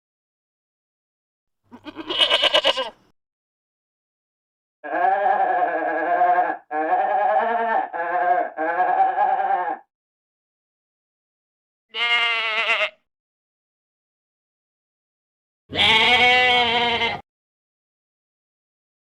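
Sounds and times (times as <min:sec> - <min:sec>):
goat bleating: 0:01.7 - 0:03.1, 0:04.8 - 0:09.8, 0:11.9 - 0:13.0, 0:15.7 - 0:17.2.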